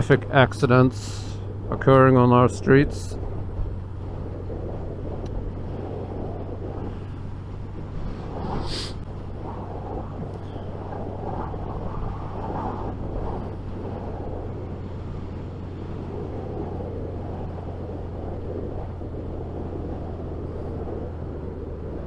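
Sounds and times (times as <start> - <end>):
motorcycle engine rumble: 0.0 - 22.0
wind noise in helmet: 0.0 - 22.0
brief hiss: 8.1 - 9.0.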